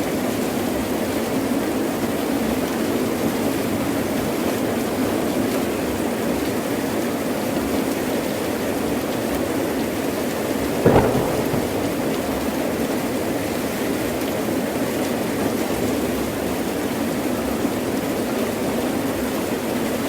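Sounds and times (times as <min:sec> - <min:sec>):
thunder crack: 0:10.7 - 0:13.6
heavy rain falling: 0:10.8 - 0:13.2.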